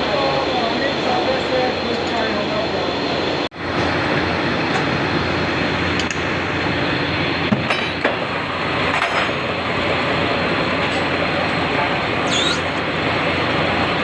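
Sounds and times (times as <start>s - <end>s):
mechanical running noise: 3.6s - 14.0s.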